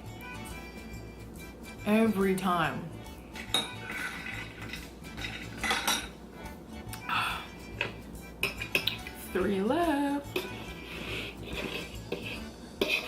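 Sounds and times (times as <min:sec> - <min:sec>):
background music: 0:00.0 - 0:13.0
cutlery scraping on a plate: 0:03.3 - 0:06.2, 0:07.8 - 0:09.1, 0:10.3 - 0:13.0.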